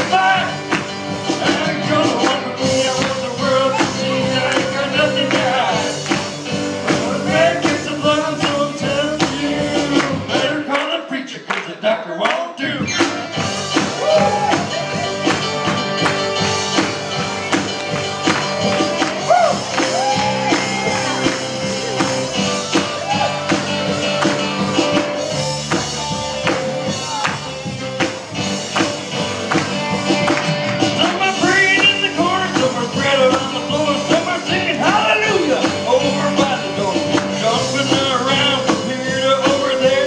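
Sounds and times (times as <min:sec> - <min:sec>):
singing over a band: 0:01.3 - 0:13.3, 0:30.8 - 0:40.0.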